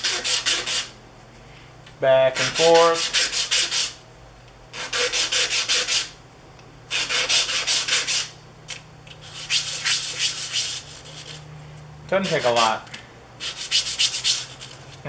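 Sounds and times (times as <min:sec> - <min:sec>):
wood rubbed on sandpaper: 0:02.4 - 0:04.0, 0:09.2 - 0:11.4, 0:12.2 - 0:12.8, 0:13.4 - 0:14.8.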